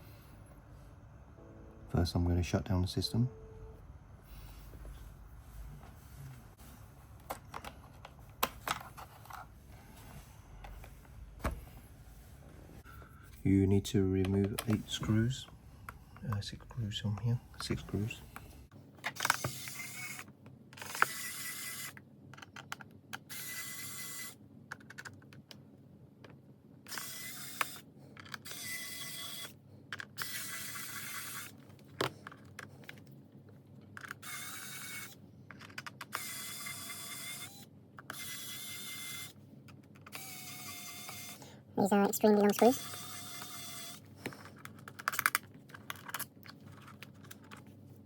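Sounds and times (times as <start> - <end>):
small screwdriver whirring: 19.1 - 22.0, 23.1 - 24.4, 26.9 - 31.6, 34.0 - 39.4, 40.0 - 41.4, 42.3 - 46.3.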